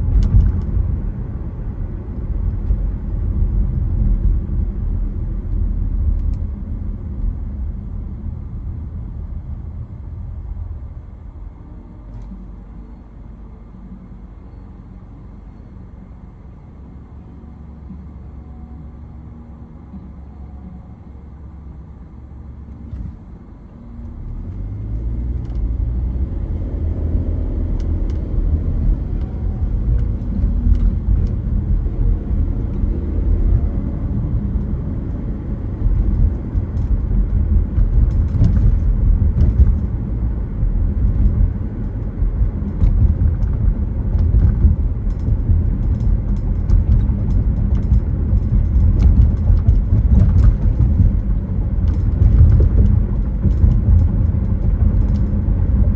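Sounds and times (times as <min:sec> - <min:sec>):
tyre road noise: 0:00.0 - 0:55.9
car engine accelerating: 0:16.7 - 0:55.9.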